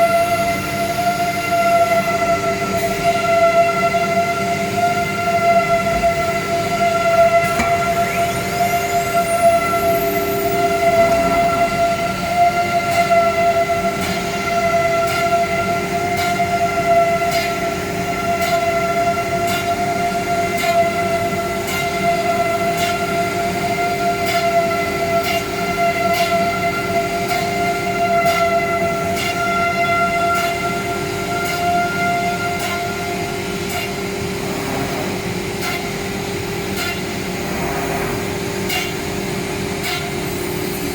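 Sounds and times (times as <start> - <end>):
router spindle whining: 7.1 - 13.0.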